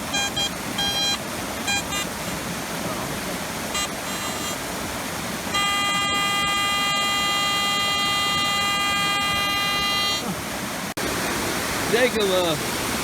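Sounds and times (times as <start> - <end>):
metal detector steady tone: 0.0 - 2.4, 3.7 - 4.6, 5.5 - 10.3
waterfall rushing: 0.0 - 13.0.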